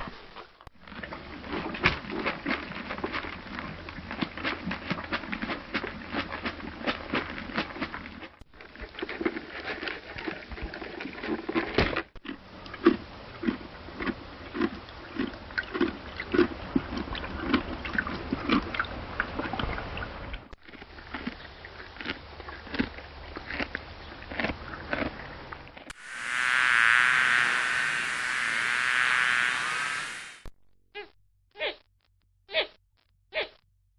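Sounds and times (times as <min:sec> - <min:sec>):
crunchy chewing: 0:00.1 - 0:18.9, 0:20.5 - 0:30.5
bee swarm buzzing: 0:25.9 - 0:30.5.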